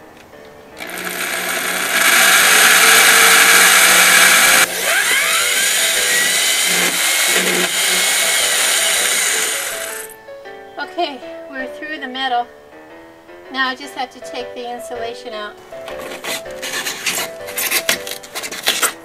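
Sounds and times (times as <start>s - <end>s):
drill whine: 0.8s - 10.2s
electric drill grinding through metal: 0.8s - 10.2s.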